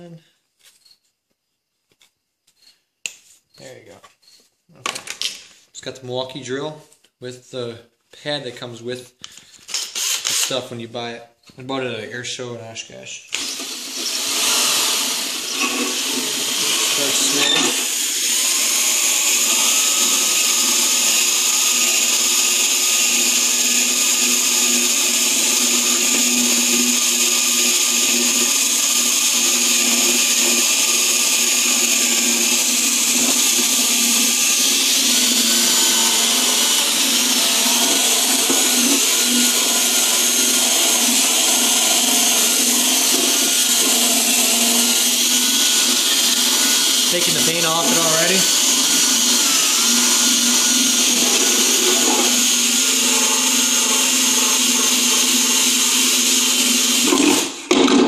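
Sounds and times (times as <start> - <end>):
drill motor whine: 13.3 - 58.0.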